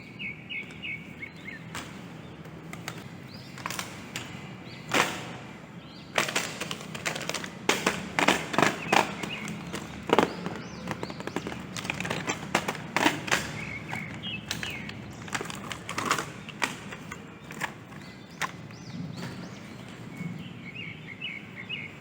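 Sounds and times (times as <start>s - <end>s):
plastic toys and packaging handled: 6.2s - 19.0s.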